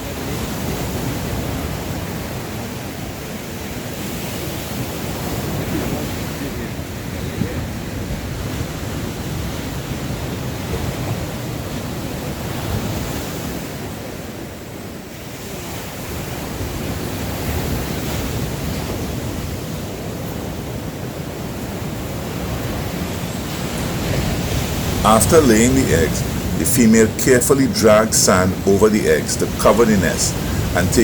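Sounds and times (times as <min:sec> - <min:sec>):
surf breaking on beach: 0:22.2 - 0:31.0.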